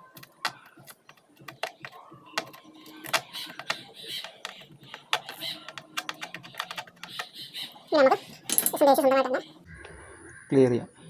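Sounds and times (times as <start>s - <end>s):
hand tools clicking and tapping: 0.0s - 7.4s, 8.2s - 9.0s.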